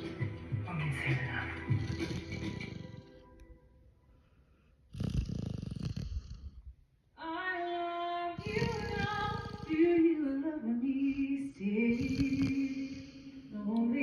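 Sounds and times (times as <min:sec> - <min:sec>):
music: 0:00.0 - 0:04.1
dog snoring: 0:01.2 - 0:03.4, 0:04.9 - 0:06.8, 0:08.4 - 0:10.0, 0:11.0 - 0:13.8
woman singing: 0:07.2 - 0:14.0.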